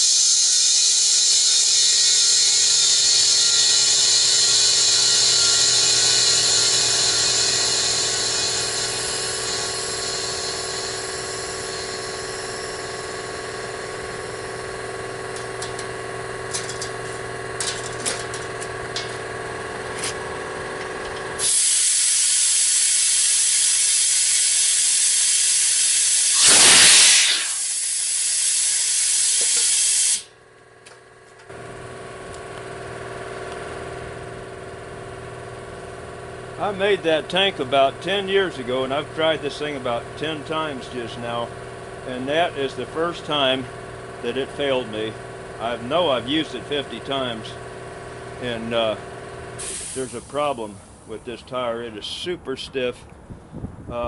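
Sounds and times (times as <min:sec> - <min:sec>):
compressed air hissing: 0:00.0 - 0:14.7, 0:21.4 - 0:30.3, 0:49.6 - 0:50.3.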